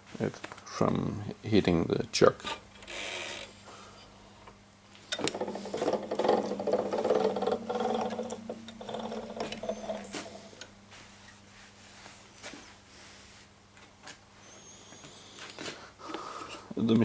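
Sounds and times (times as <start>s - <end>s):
small mechanical clicks: 2.8s - 3.5s
lathe carriage gear whirr: 5.1s - 11.5s.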